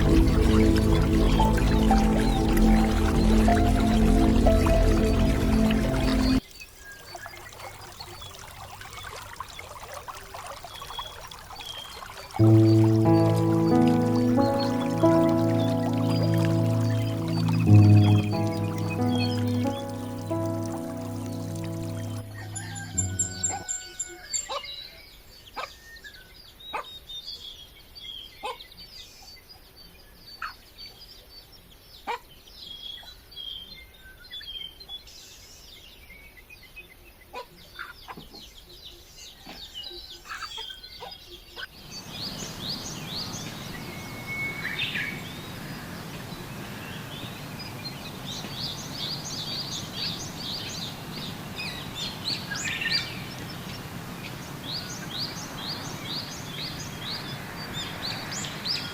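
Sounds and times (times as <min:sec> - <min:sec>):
birds chirping: 0:00.0 - 0:06.4, 0:12.4 - 0:24.2.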